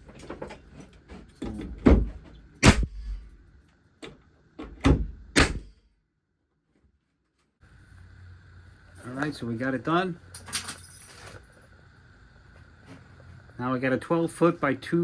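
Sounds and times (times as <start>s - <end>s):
nail gun shots: 2.6s - 3.1s, 5.3s - 5.8s.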